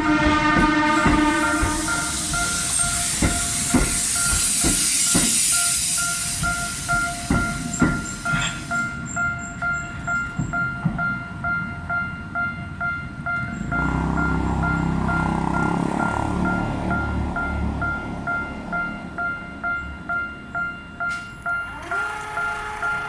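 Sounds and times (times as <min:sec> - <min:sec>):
train wheels knocking on rail joints: 0:00.0 - 0:12.0
level crossing warning bell: 0:00.0 - 0:23.0
train hiss: 0:00.8 - 0:09.2.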